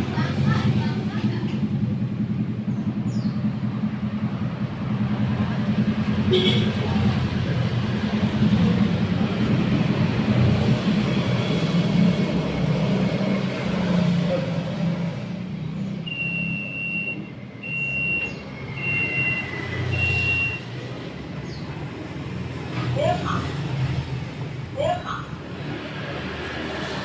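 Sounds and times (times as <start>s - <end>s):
high electronic beeps: 16.1s - 20.8s.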